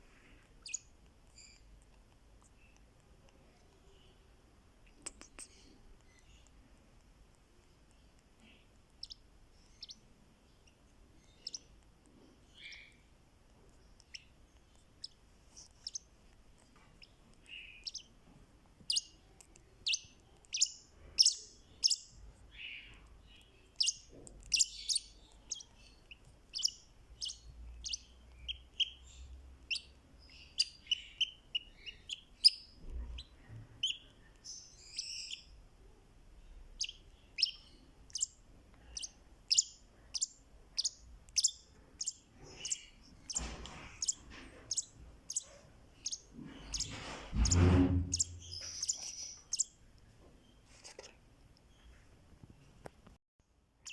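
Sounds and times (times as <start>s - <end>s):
lovebird chirping: 0.6s - 1.8s, 5.0s - 6.6s, 7.9s - 13.1s, 13.8s - 16.2s, 17.0s - 18.2s, 18.8s - 49.8s.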